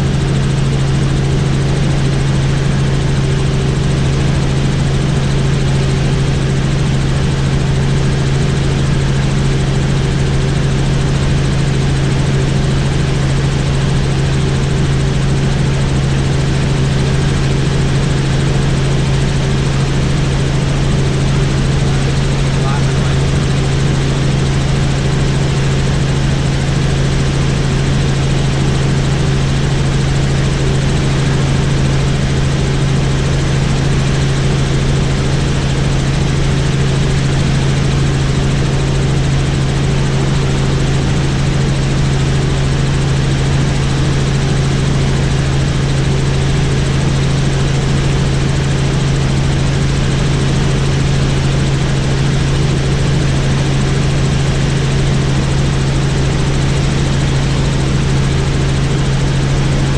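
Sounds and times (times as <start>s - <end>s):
helicopter engine and rotor drone: 0.0s - 59.9s
strong low hum: 20.6s - 24.6s.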